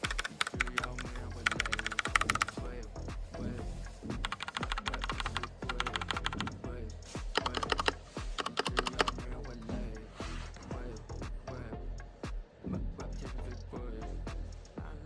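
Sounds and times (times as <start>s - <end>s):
fast mechanical keyboard typing: 0.0s - 2.6s, 4.2s - 6.5s, 7.3s - 9.2s
background music: 0.0s - 15.0s.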